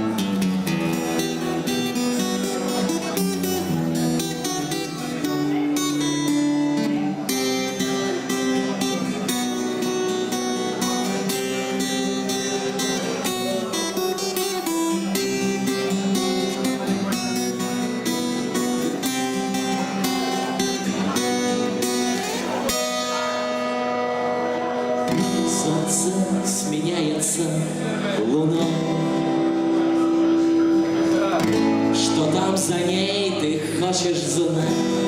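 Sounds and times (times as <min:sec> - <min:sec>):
acoustic guitar strumming: 0:00.0 - 0:35.0.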